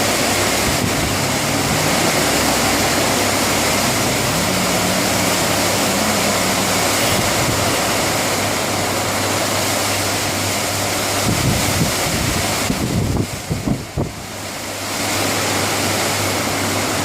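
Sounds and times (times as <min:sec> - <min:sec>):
wind buffeting the microphone: 0:00.0 - 0:02.6, 0:11.1 - 0:14.4
heavy rain falling: 0:00.0 - 0:17.0.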